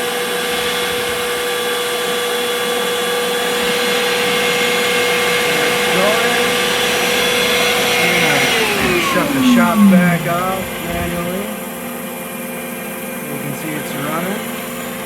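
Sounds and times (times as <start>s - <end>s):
shop vacuum running: 0.0s - 15.0s
short rising whine: 6.1s - 11.9s.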